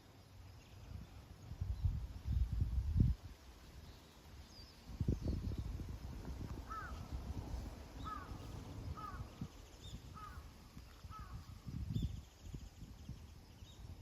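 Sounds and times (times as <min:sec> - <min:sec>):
wind rumbling on microphone: 0:00.6 - 0:14.0
faint high bird calls: 0:06.6 - 0:07.2, 0:07.9 - 0:13.9
bird calling: 0:08.0 - 0:11.6.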